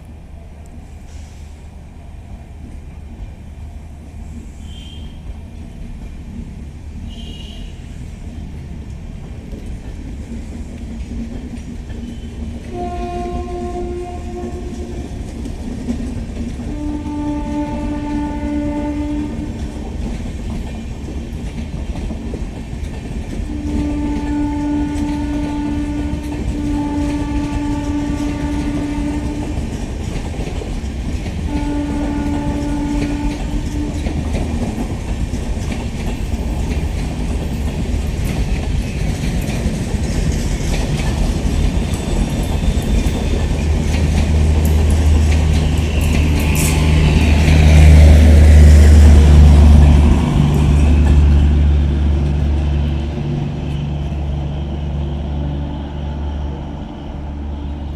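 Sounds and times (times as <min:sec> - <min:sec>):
train wheels rumbling on track: 0:00.0 - 0:57.9
locomotive horn blasts: 0:04.6 - 0:05.2, 0:07.1 - 0:07.8, 0:12.1 - 0:15.2, 0:16.7 - 0:19.6, 0:23.5 - 0:29.7, 0:31.5 - 0:34.2.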